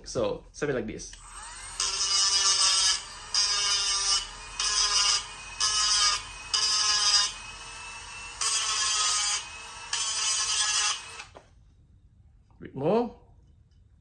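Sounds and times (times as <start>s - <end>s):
small grinder grinding metal: 1.0s - 11.4s.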